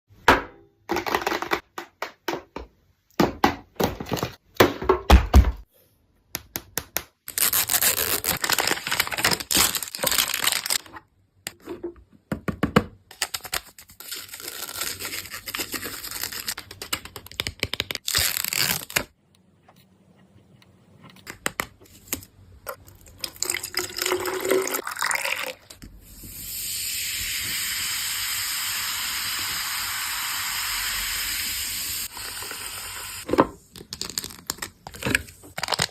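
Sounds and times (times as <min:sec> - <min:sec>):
packaging crinkling and tearing: 0:07.3 - 0:10.9, 0:13.1 - 0:19.2, 0:33.8 - 0:35.9.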